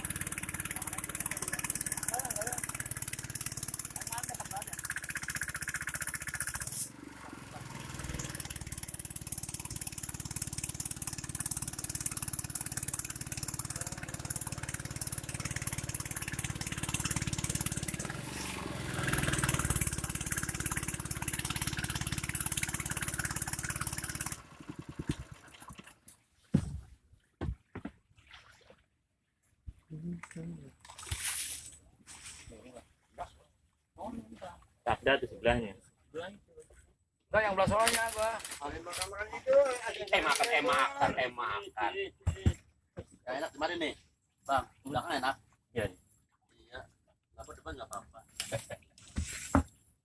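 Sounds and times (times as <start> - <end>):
boat engine chugging: 0.0 - 25.6.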